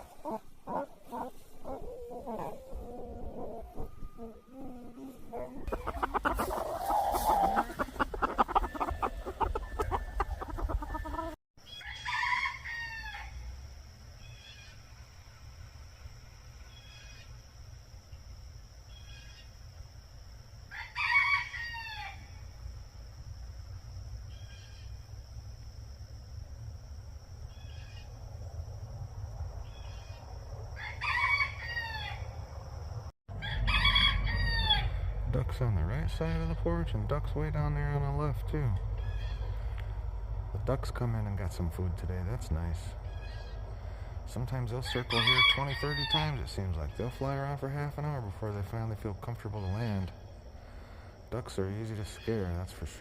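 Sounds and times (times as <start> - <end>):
chickens clucking: 0.0 - 11.4
rooster crowing: 5.7 - 13.5, 20.7 - 22.4, 30.7 - 32.4, 33.3 - 35.2, 44.8 - 46.4.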